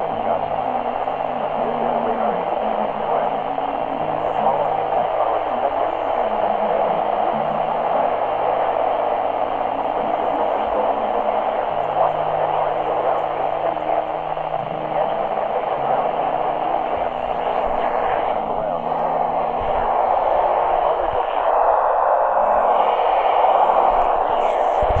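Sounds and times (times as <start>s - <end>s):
radio static hiss: 0.0s - 25.0s
low hum shifting pitch: 13.1s - 25.0s.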